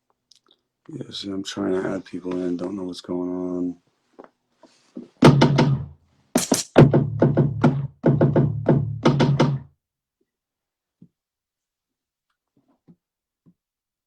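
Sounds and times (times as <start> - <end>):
fast drum hits: 5.2 - 9.6.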